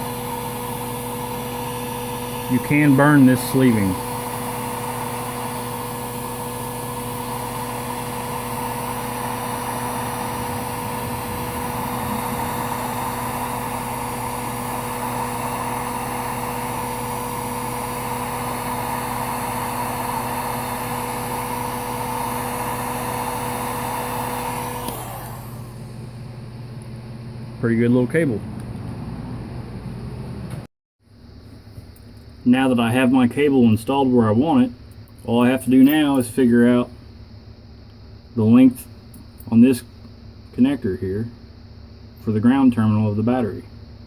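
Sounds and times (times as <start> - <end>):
heat gun blowing air: 0.0 - 26.2.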